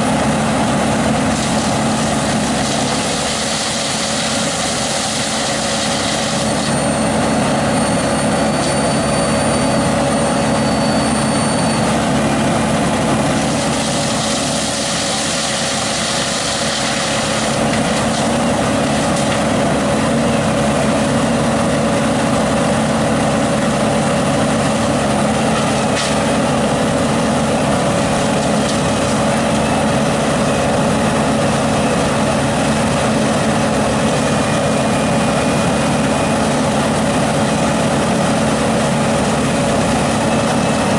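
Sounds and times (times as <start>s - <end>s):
heavy engine running: 0.0s - 40.9s
thin high whistle: 6.4s - 11.9s.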